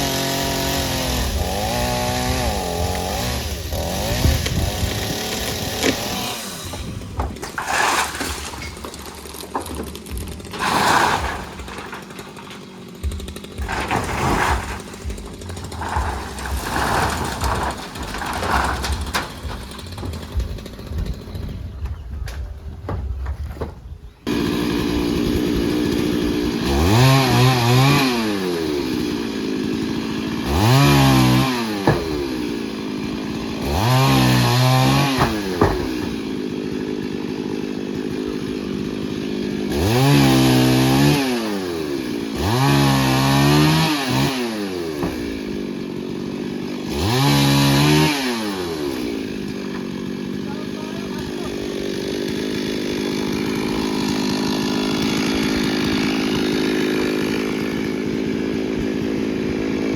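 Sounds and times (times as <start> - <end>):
chainsaw idling and revving: 0.0 - 21.8, 24.2 - 59.9.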